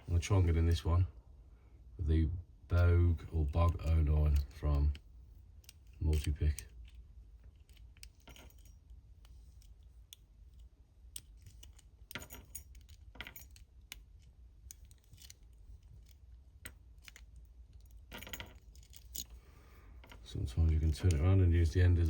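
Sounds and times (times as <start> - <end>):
lock pick metallic clicks: 5.6 - 19.4
lock pick scraping: 5.6 - 22.0.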